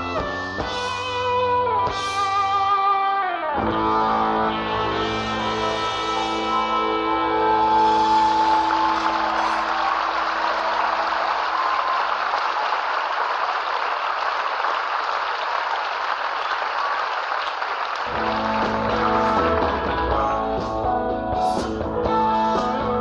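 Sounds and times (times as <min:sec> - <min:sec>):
live rock band chords: 0:00.0 - 0:10.3, 0:18.1 - 0:23.0
electric guitar: 0:00.0 - 0:11.4, 0:18.0 - 0:23.0
audience applauding: 0:04.9 - 0:20.6.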